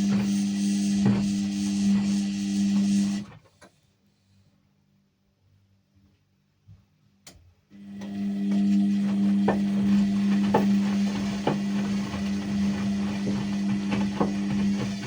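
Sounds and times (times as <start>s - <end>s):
washing machine motor hum: 0.0s - 3.5s, 7.7s - 15.0s.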